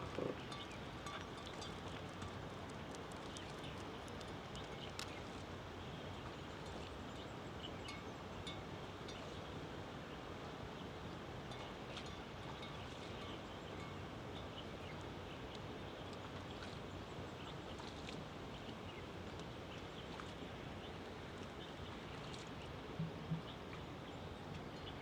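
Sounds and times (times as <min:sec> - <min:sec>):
faint high ticks and chirps: 0:00.5 - 0:05.4.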